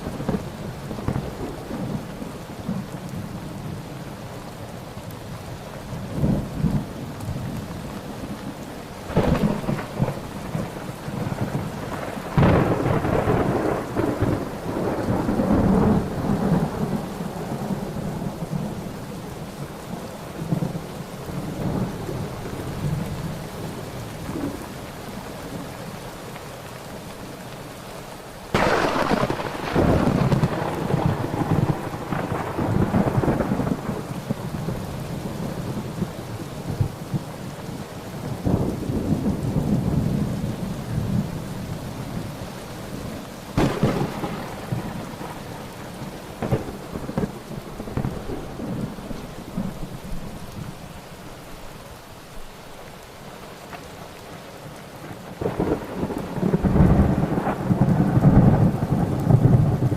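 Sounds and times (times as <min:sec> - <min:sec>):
steady rain: 0:00.0 - 0:59.9
rolling thunder: 0:09.0 - 0:18.8, 0:28.5 - 0:37.3, 0:38.3 - 0:41.5, 0:43.6 - 0:50.4, 0:55.3 - 0:59.9
sharp thunderclap: 0:09.1 - 0:17.0, 0:28.5 - 0:34.4, 0:43.6 - 0:45.4, 0:46.4 - 0:48.9.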